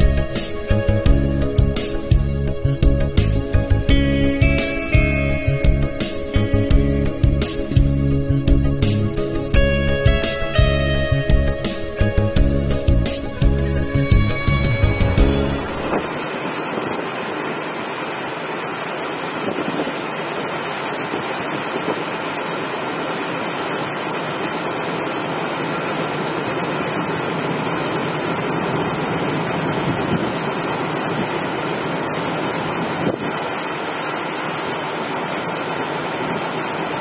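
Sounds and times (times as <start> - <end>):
wind on microphone: 13.7 - 17.2, 19.4 - 20.1, 29.8 - 30.5, 33.0 - 33.4
sea water: 14.0 - 37.0.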